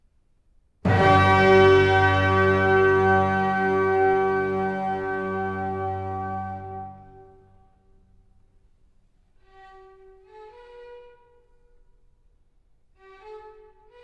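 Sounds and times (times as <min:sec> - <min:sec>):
soft violin-like melody: 0:00.9 - 0:07.4.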